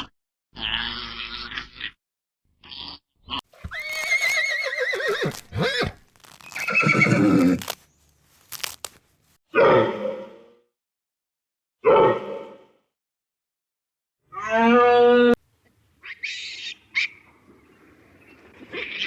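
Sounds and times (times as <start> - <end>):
horse whinnying: 3.6 - 7.7
rough animal sounds: 3.6 - 9.0.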